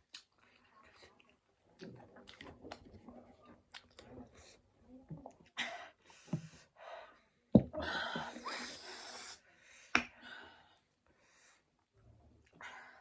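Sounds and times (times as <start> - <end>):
mouth noises and sniffs: 8.5 - 9.4.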